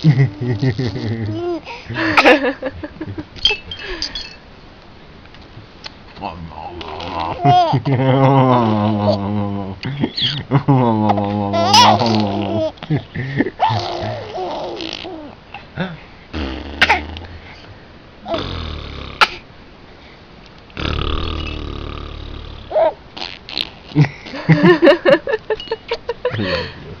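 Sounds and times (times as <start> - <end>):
child blowing mouth fart sounds: 16.4 - 17.2, 18.3 - 19.4, 20.8 - 24.4.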